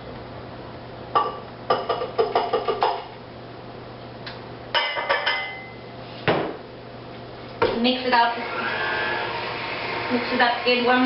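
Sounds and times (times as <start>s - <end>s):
measuring cup clinking on bowl: 4.8s - 5.8s.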